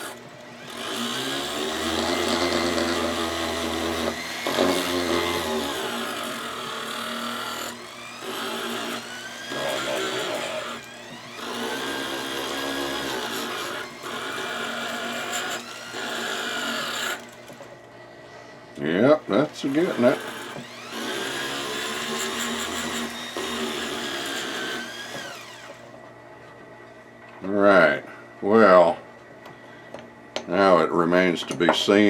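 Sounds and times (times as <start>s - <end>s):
rotary tool grinding metal: 0.0s - 17.7s, 19.1s - 25.9s.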